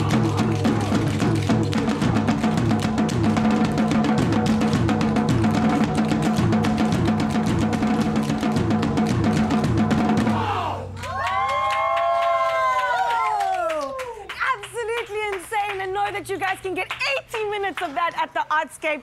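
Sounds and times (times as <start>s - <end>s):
drum-heavy backing music: 0.0s - 10.6s.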